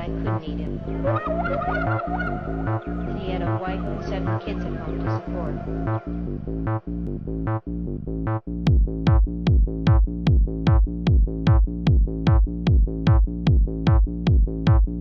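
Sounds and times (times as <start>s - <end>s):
synth bass line: 0.0s - 15.0s
kick drum: 8.6s - 15.0s.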